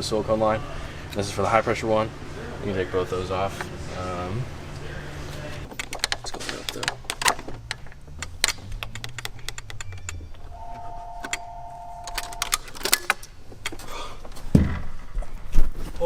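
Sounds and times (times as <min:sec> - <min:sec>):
metal tools clinking: 0:05.7 - 0:13.8
steady high tone: 0:10.4 - 0:12.8.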